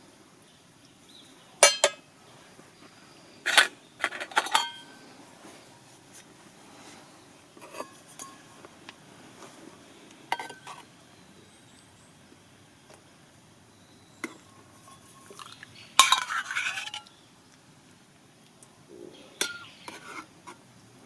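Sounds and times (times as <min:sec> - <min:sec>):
tableware clinking: 0:01.6 - 0:02.0, 0:03.5 - 0:04.9, 0:07.6 - 0:08.6, 0:10.3 - 0:10.8, 0:14.2 - 0:17.0.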